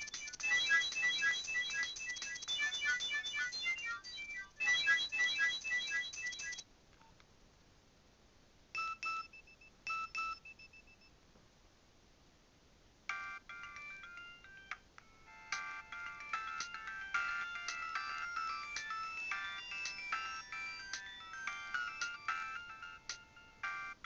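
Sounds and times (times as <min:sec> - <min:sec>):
polyphonic ringtone melody: 0:00.0 - 0:06.6, 0:13.1 - 0:24.0.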